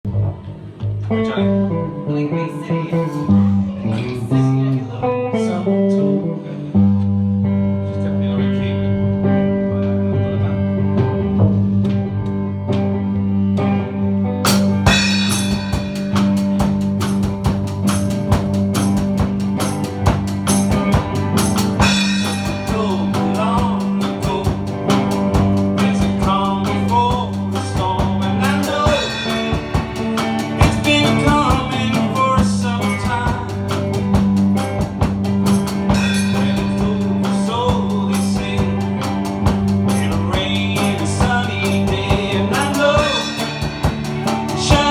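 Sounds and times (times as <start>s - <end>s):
guitar song with singing: 0.9s - 44.9s
drum kit beat: 14.4s - 44.9s.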